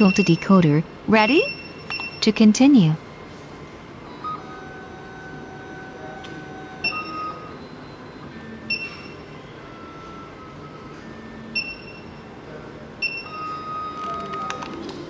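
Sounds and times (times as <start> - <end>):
key cutting machine motor whine: 3.4 - 14.4.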